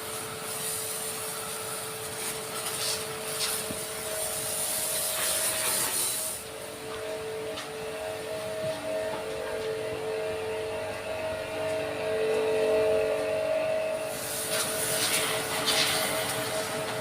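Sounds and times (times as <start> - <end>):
water spray hissing: 0.0 - 6.4, 14.1 - 16.6
pressure washer whine: 0.0 - 17.0.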